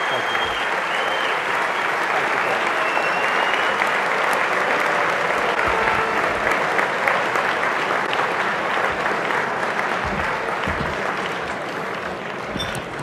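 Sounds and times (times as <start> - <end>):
audience applauding: 0.0 - 13.0.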